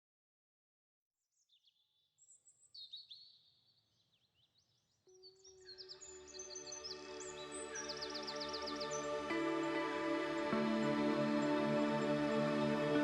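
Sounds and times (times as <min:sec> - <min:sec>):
birds chirping and whistling: 0:05.3 - 0:09.5
soft sustained musical notes: 0:05.9 - 0:13.0.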